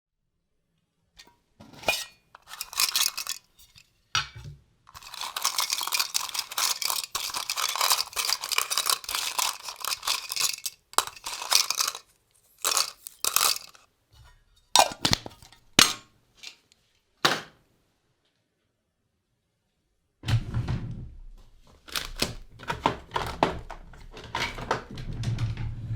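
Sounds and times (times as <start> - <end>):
hands rummaging through a drawer: 1.6 - 3.8, 4.9 - 13.8, 21.7 - 25.4.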